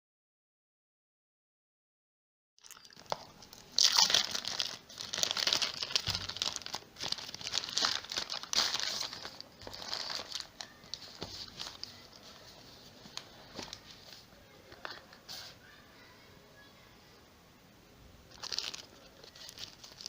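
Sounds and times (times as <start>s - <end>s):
plastic packaging crinkling and tearing: 2.6s - 15.6s, 18.3s - 20.0s.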